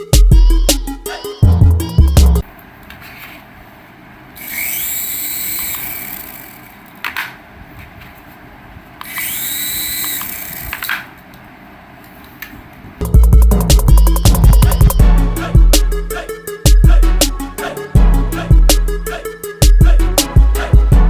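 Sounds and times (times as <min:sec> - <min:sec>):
toy electric motor whirring: 0:04.4 - 0:07.0, 0:09.0 - 0:11.0.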